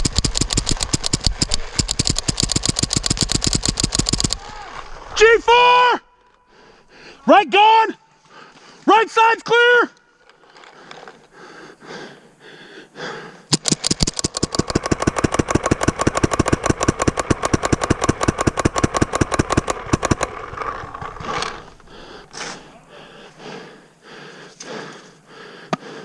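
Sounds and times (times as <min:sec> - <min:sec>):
paintball marker rapid firing: 0:00.0 - 0:04.5, 0:13.5 - 0:22.6.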